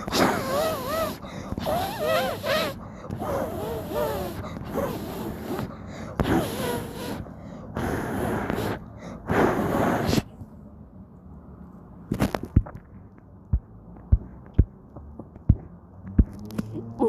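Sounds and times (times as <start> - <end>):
soft thumps and knocks: 13.5 - 16.5.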